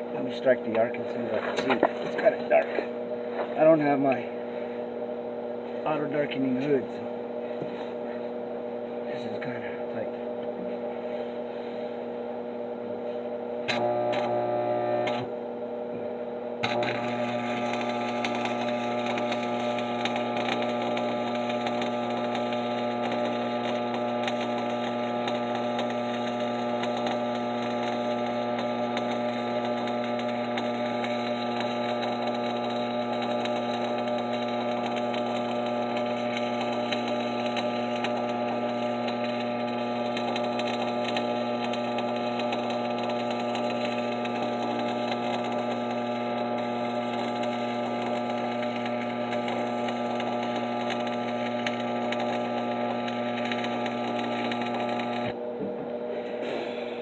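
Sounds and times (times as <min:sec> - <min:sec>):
welding arc crackling: 0:00.0 - 0:03.0, 0:13.6 - 0:15.3, 0:16.6 - 0:55.4
steady electrical hum: 0:00.0 - 0:57.0.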